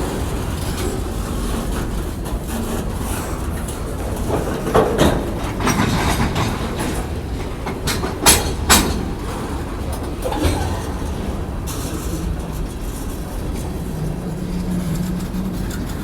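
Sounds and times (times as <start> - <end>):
train cars rumbling past: 0.0 - 16.0
wheels clacking over rail joints: 0.0 - 16.0.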